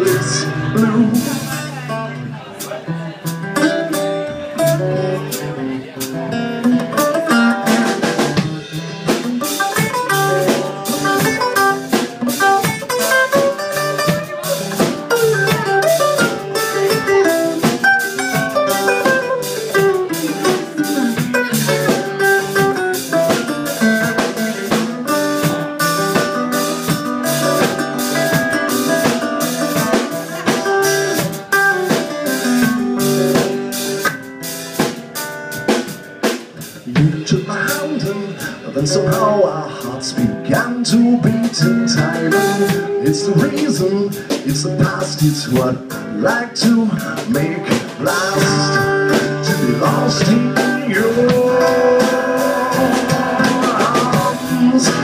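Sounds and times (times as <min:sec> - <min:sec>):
drum kit beat with rimshots: 0:00.0 - 0:55.0
lead guitar bending notes: 0:47.5 - 0:55.0.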